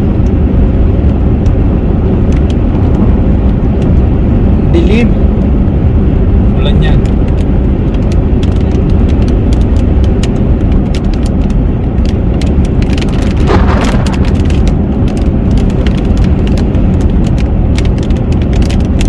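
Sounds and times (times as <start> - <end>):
road and engine rumble: 0.0 - 19.0
raindrops ticking on car: 6.8 - 19.0.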